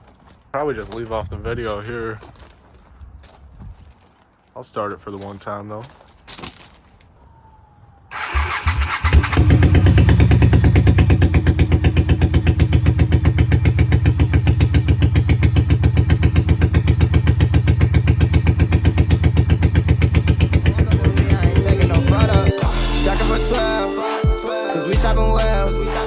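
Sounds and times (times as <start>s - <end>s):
starter motor cranking: 8.1s - 11.3s
motorcycle engine idling: 8.2s - 22.6s.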